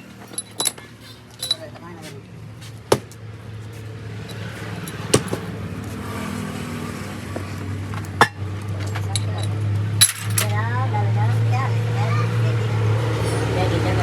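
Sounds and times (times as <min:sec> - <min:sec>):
sharp metallic knocks: 0:02.9 - 0:03.2, 0:04.3 - 0:05.6.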